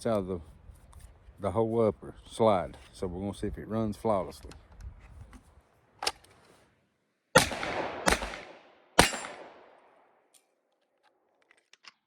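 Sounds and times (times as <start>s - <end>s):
pistol shots with echo: 7.4s - 10.1s.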